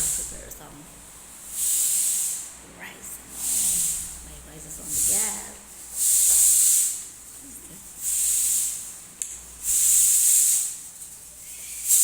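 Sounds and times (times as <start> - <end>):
pressure cooker steam hissing: 0.0 - 0.5, 1.3 - 2.6, 3.3 - 7.2, 7.9 - 9.0, 9.6 - 12.0.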